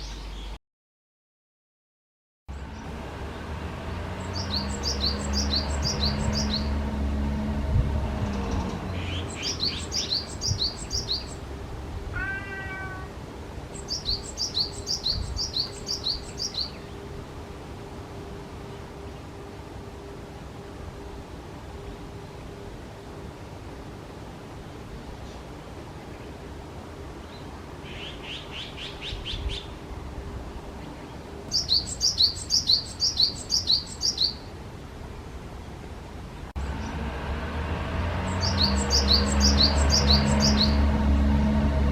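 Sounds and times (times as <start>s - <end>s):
small bird calling: 4.2s - 6.8s, 8.3s - 11.4s, 12.2s - 17.0s, 27.2s - 29.8s, 30.8s - 34.5s
bird mewing call: 12.2s - 13.2s.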